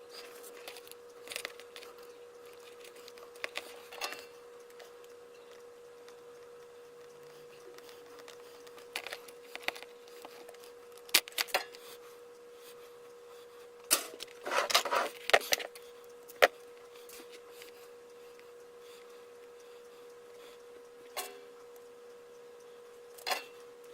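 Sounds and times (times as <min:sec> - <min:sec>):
faint steady hum: 0:00.0 - 0:23.9.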